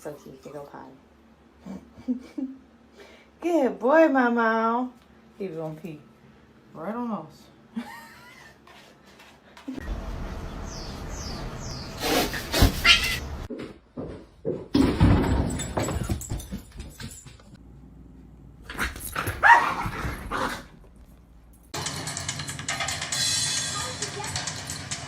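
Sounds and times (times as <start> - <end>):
pet cries: 12.7 - 13.3.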